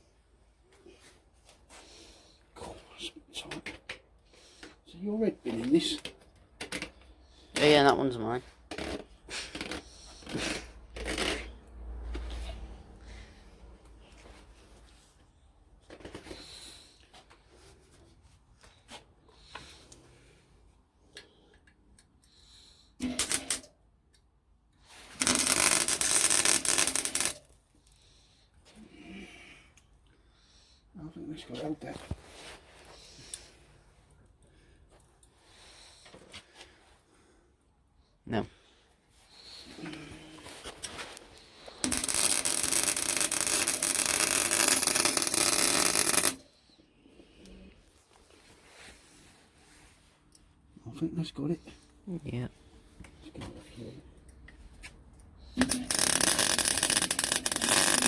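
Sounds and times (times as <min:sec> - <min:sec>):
welding arc crackling: 0:23.0 - 0:23.6, 0:25.2 - 0:27.4, 0:41.8 - 0:46.4, 0:55.6 - 0:58.0.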